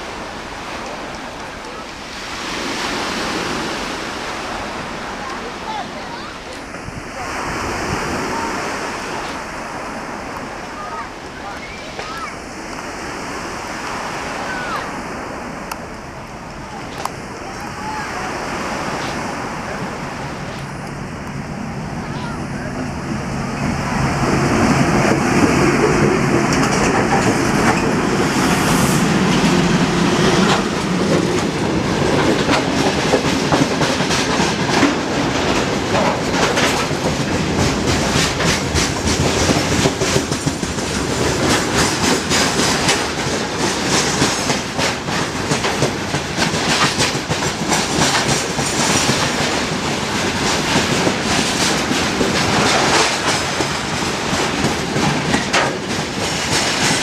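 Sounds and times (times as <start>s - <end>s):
train wheels clattering over rails: 22.7s - 57.0s.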